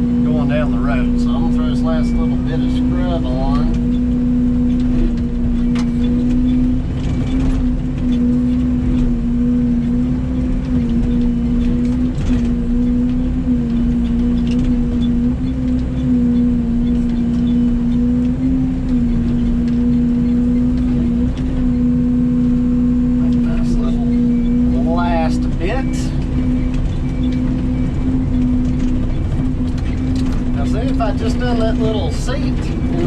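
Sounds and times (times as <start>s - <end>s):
excavator engine running: 0.0s - 33.0s.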